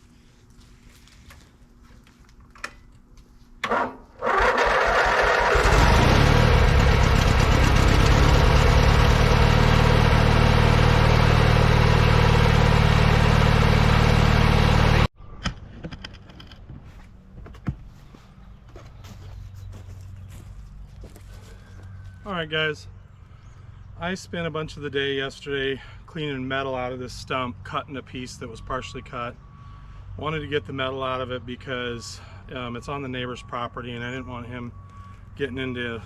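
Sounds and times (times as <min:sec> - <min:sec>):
engine cranking and idling: 0:03.6 - 0:15.1.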